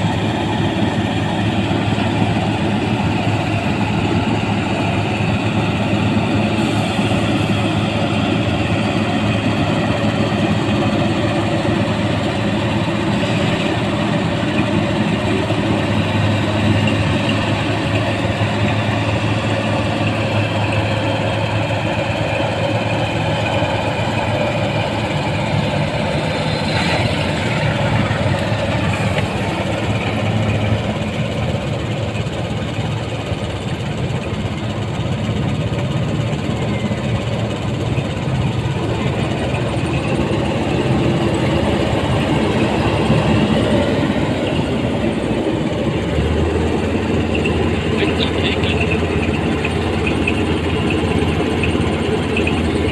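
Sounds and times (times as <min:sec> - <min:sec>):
combine harvester running: 0:00.0 - 0:52.9.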